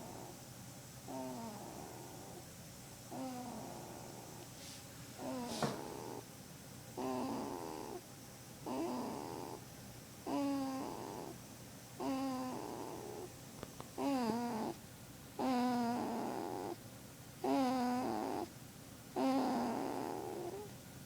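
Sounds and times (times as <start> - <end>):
baby snoring: 0.0 - 0.4, 1.1 - 2.5, 3.1 - 4.5, 5.2 - 6.3, 7.0 - 8.0, 8.6 - 9.6, 10.2 - 11.4, 12.0 - 13.3, 14.0 - 14.8, 15.4 - 16.8, 17.4 - 18.5, 19.2 - 20.7.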